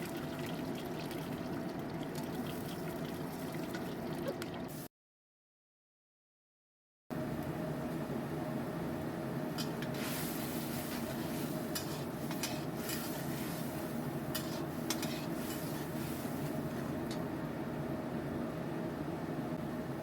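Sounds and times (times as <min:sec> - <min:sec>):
steady low hum: 0:07.1 - 0:20.0.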